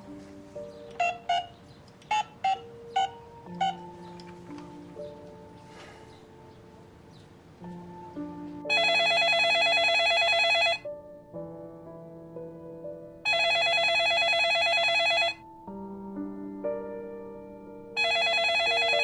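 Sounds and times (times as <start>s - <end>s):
soft background music: 0.0s - 19.0s
telephone ringing: 8.7s - 10.8s, 13.3s - 15.4s, 18.0s - 19.0s.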